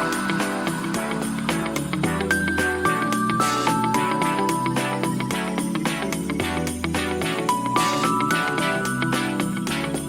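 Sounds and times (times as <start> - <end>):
music with a steady beat: 0.0 - 10.0.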